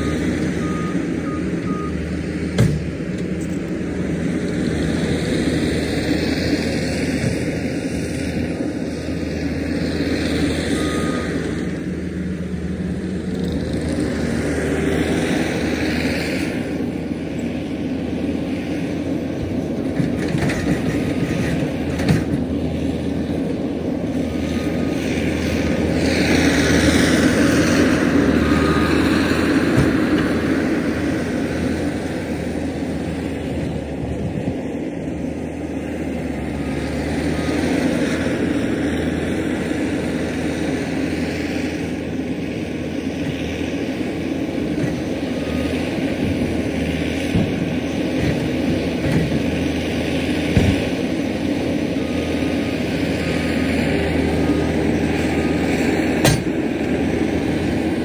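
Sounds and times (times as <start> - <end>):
diesel engine of earthmover: 0.0 - 58.0.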